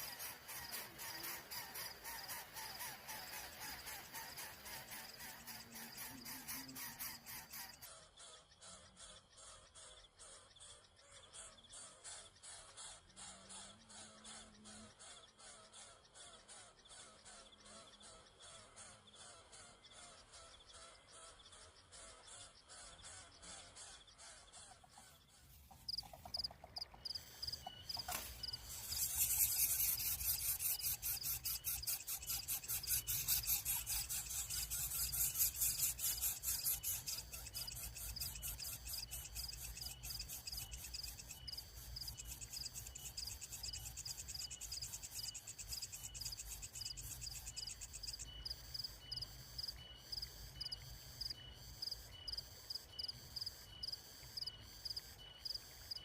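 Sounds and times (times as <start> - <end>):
insects chirping: 0.0 - 7.9, 25.0 - 56.0.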